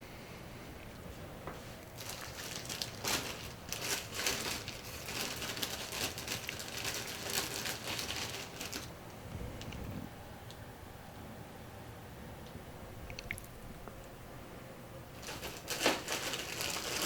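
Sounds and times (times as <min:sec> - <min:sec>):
bread crinkling and crackling: 0:01.6 - 0:09.8, 0:15.2 - 0:17.0.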